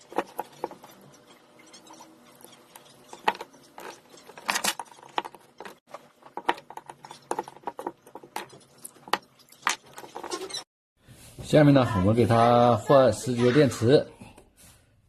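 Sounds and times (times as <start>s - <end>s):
plastic bracket clicks and scrapes: 3.0s - 10.6s.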